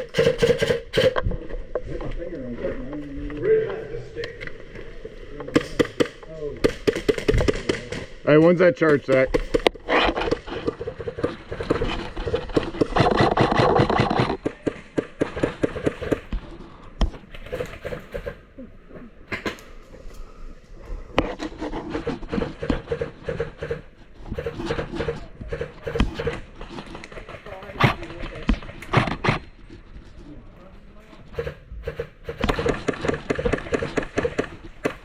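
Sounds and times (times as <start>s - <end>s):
airsoft guns firing: 0.0s - 1.2s, 5.5s - 11.8s, 12.6s - 16.3s, 17.3s - 18.4s, 31.3s - 35.0s.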